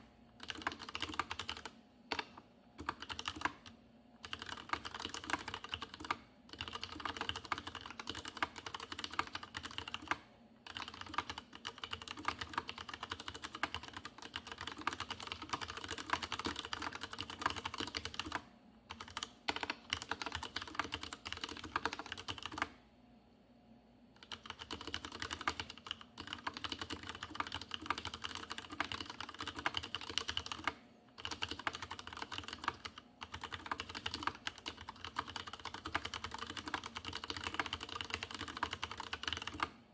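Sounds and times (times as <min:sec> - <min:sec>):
fast mechanical keyboard typing: 0:00.4 - 0:22.8, 0:24.2 - 0:39.8.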